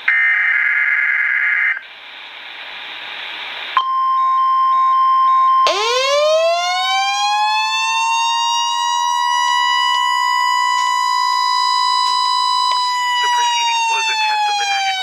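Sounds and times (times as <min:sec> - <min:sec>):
warning alarm tone: 0:03.8 - 0:15.0
siren-style alarm winding up: 0:05.6 - 0:15.0.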